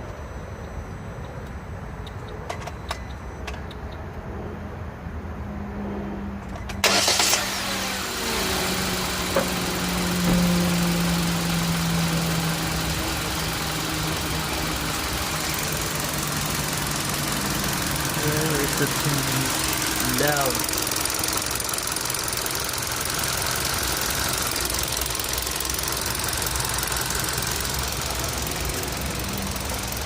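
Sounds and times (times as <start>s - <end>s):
car engine cranking and idling: 6.4s - 30.0s.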